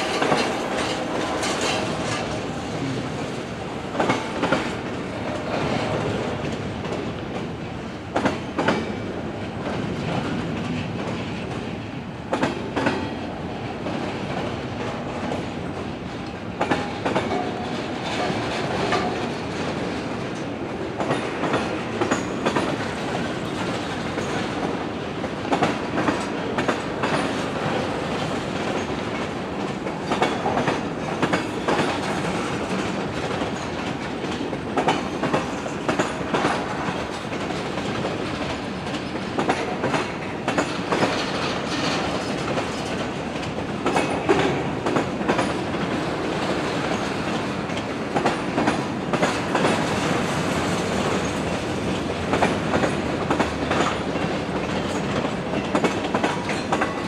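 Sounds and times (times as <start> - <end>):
freight train rolling: 0.0 - 57.0
train wheels clicking over rail joints: 0.0 - 57.0.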